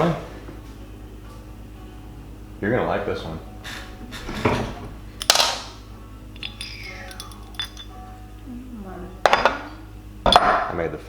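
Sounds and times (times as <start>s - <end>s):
light metallic clinks and taps: 6.3s - 8.0s.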